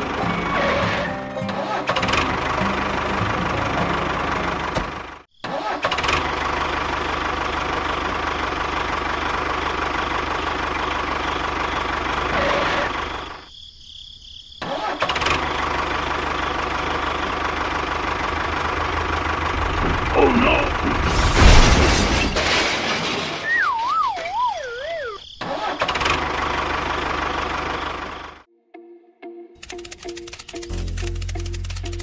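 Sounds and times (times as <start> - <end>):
tractor motor humming: 0.0 - 5.3, 6.2 - 13.4, 15.2 - 21.1, 26.0 - 28.4.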